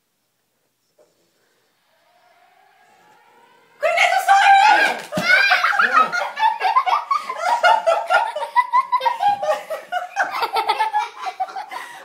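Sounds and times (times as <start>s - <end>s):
laughter in pulses: 5.6s - 12.0s.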